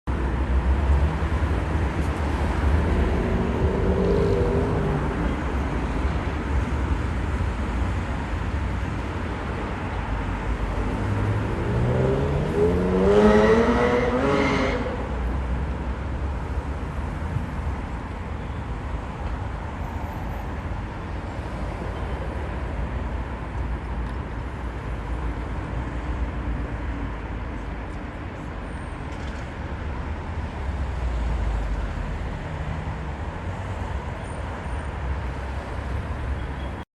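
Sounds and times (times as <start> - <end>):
low rumble of road traffic: 0.0 - 36.8
vehicle engine accelerating past: 11.4 - 14.8.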